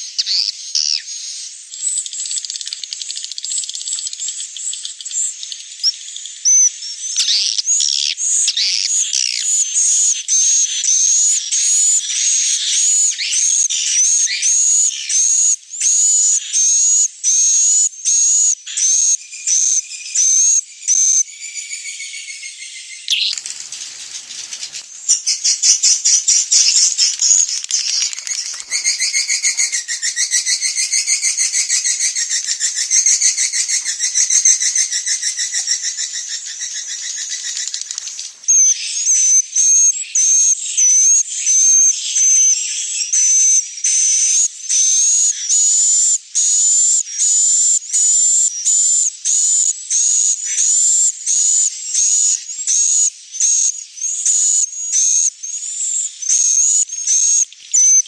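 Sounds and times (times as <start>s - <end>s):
rapid buzzing bird twitter: 0.0s - 58.0s.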